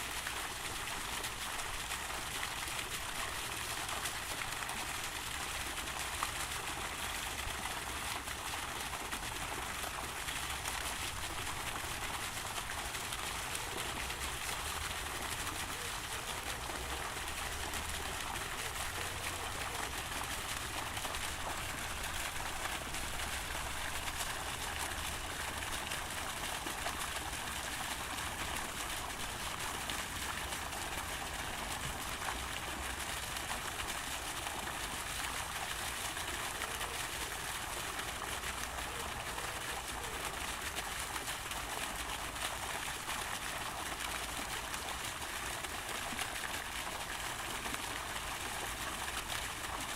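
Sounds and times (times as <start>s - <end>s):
fountain water splashing: 0.0s - 49.9s.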